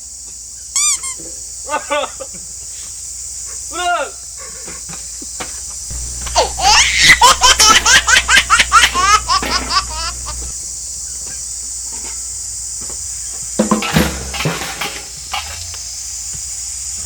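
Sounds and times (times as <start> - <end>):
person laughing heartily: 6.0 - 10.5.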